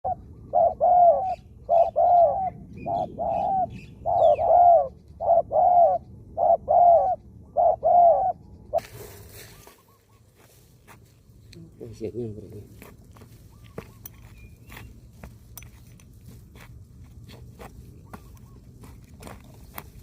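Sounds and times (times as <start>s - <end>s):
dove cooing: 0.0s - 8.8s, 18.0s - 20.0s.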